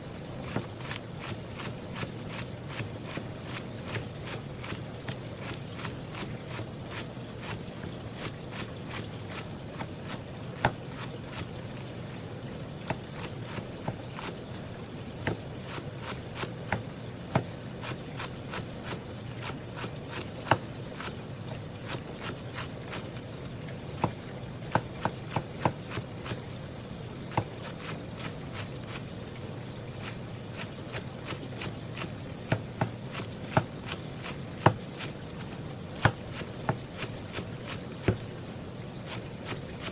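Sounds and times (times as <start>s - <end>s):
steady low hum: 0.0s - 39.9s
knife chopping on cutting board: 0.4s - 11.9s, 12.8s - 14.4s, 15.2s - 21.2s, 24.0s - 26.4s, 27.3s - 29.0s, 30.0s - 38.3s.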